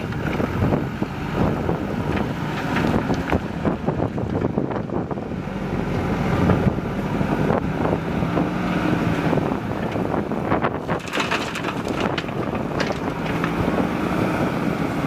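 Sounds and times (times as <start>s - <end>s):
diesel engine running: 0.0s - 15.0s
wind buffeting microphone: 0.0s - 15.0s
knocks and clanks: 10.8s - 13.7s.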